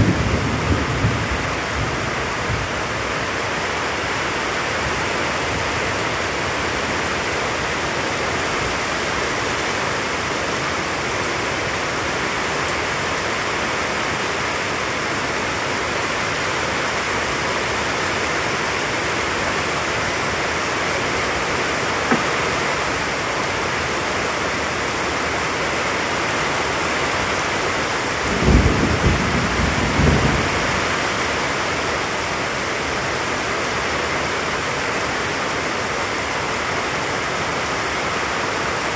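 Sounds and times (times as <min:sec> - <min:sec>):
low rumble of thunder: 0:00.0 - 0:02.8, 0:28.2 - 0:31.2
steady rain: 0:00.0 - 0:38.9.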